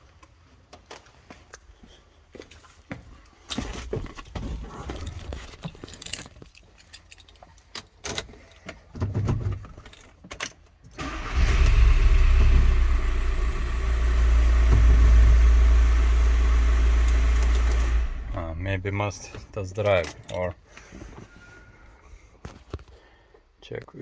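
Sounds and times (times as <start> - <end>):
van engine starting and idling: 11.0 - 19.6.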